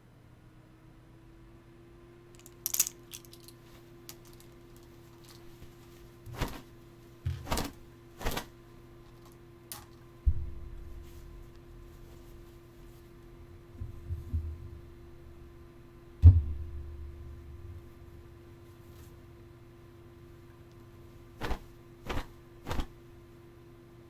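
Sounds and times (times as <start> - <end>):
steady low hum: 0.0 - 24.0
objects clicking and clattering: 2.4 - 5.6
low rumble: 10.3 - 12.0.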